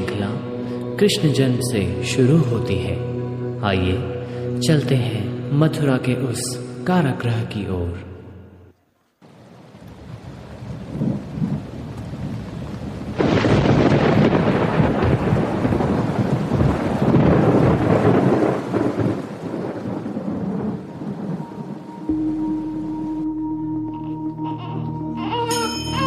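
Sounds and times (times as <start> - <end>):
rain: 8.7 - 26.0
thunder rumbling: 9.2 - 23.3.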